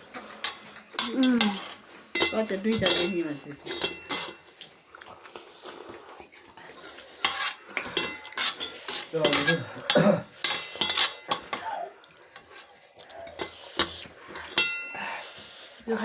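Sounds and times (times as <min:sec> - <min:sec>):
spoons clinking against bowls: 0:00.4 - 0:04.6, 0:07.2 - 0:15.2.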